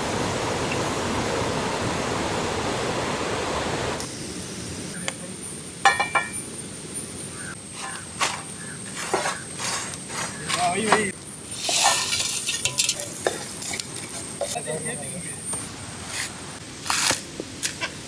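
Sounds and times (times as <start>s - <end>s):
cooking utensils clinking: 5.8s - 6.4s, 10.3s - 14.6s.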